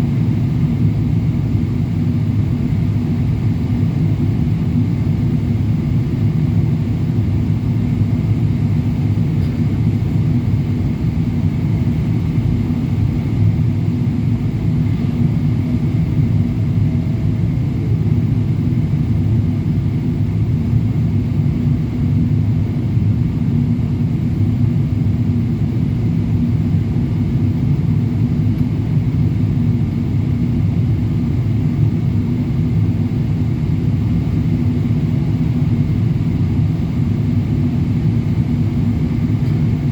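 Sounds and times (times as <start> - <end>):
jet engines low rumble: 0.0 - 39.9.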